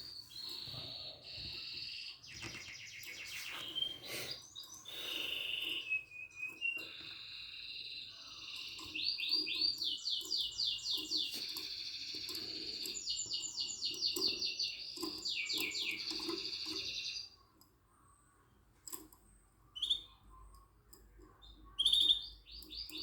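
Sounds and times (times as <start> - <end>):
canary singing trills: 0.0 - 23.0.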